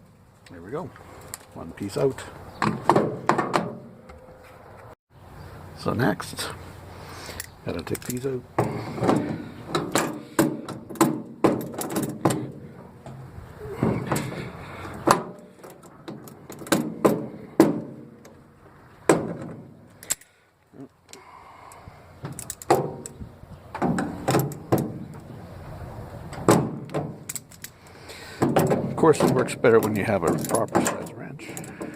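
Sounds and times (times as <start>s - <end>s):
hand tools clanking on metal: 7.3s - 18.4s, 22.3s - 23.2s, 23.8s - 25.0s, 26.4s - 31.9s.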